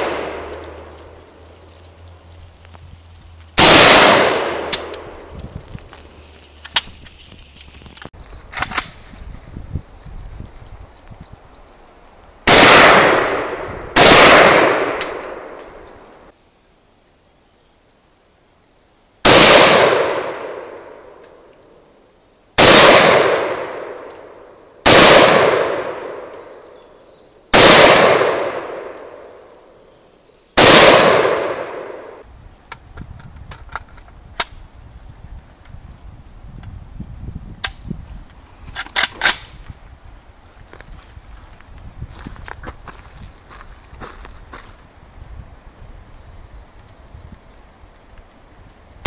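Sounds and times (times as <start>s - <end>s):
rifle shots ringing out: 0.0s - 0.8s, 3.6s - 5.0s, 12.5s - 15.6s, 19.2s - 21.1s, 22.6s - 24.1s, 24.8s - 26.4s, 27.5s - 29.4s, 30.6s - 32.2s.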